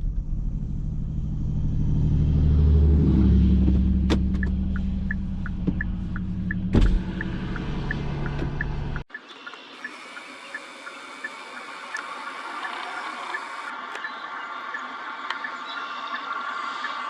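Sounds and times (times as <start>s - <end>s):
car engine running: 0.0s - 9.1s
turn signal relay clicking: 4.1s - 9.1s.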